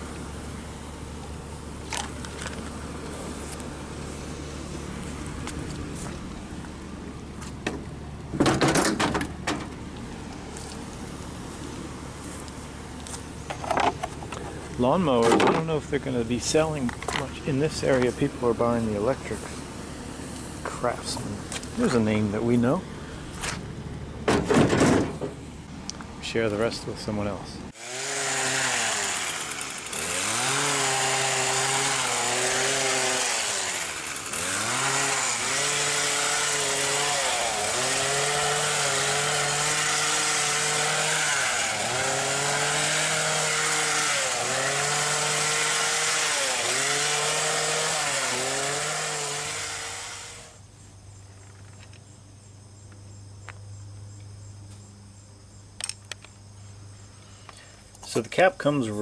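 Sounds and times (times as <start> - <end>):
low steady hum: 0.0 - 27.8
small motor running: 27.8 - 47.4.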